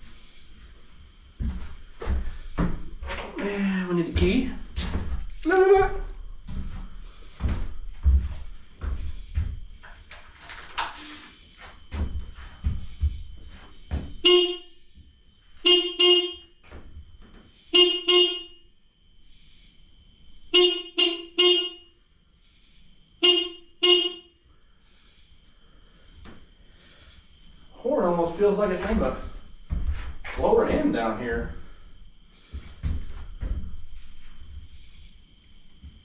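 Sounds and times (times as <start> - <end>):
electric horn beeps: 14.2 - 14.8, 15.6 - 16.6, 17.7 - 18.6, 20.5 - 21.9, 23.2 - 24.4.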